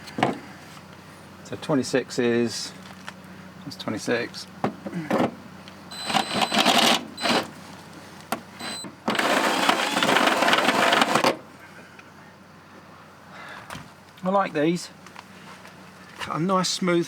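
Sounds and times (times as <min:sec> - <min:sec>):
power drill cutting sheet metal: 0:08.6 - 0:11.3.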